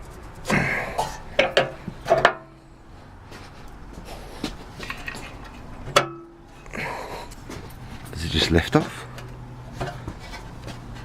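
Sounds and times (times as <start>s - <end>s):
metal cover clanking: 0.9s - 2.6s, 4.9s - 6.5s.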